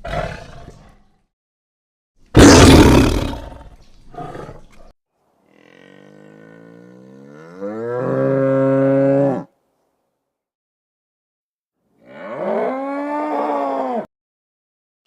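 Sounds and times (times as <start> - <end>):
cow mooing: 5.5 - 9.5, 12.0 - 14.1.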